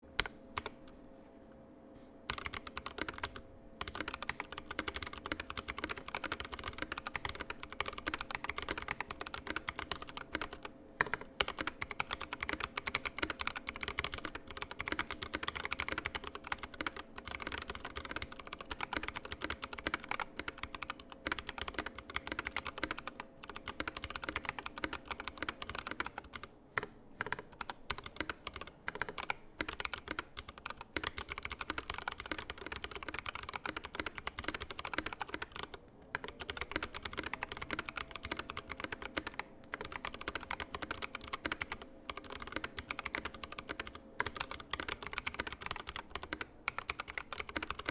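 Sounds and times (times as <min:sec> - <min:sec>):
mechanical keyboard typing: 0:00.2 - 0:00.9, 0:02.3 - 0:47.9.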